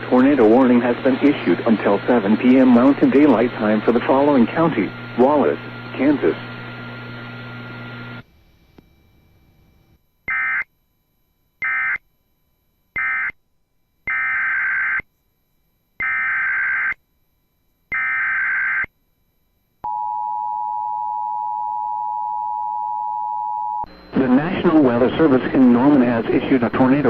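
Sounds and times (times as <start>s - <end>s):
data bursts: 23.8s - 27.0s.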